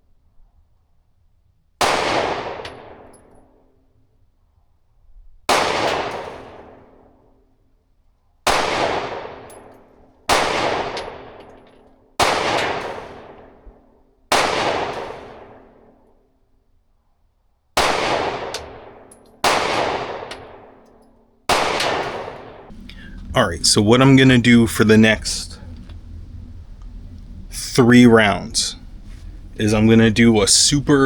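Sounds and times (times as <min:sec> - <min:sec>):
pistol shots: 0:01.8 - 0:03.1, 0:05.5 - 0:06.8, 0:08.5 - 0:09.5, 0:10.3 - 0:11.4, 0:12.2 - 0:13.6, 0:14.3 - 0:15.8, 0:17.8 - 0:20.8, 0:21.5 - 0:23.3.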